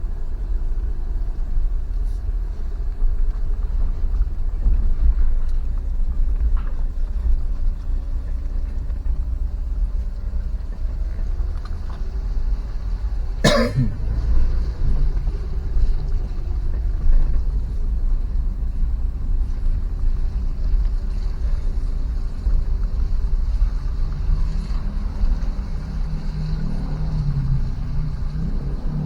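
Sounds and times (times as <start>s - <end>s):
vehicle rumble: 0.0s - 29.0s
short cough: 13.4s - 14.0s.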